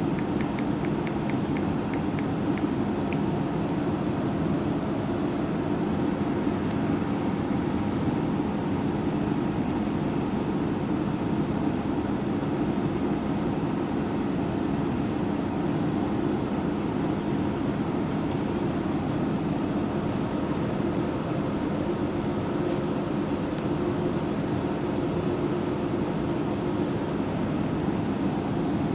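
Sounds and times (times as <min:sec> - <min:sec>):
bus engine and road noise: 0:02.4 - 0:28.9.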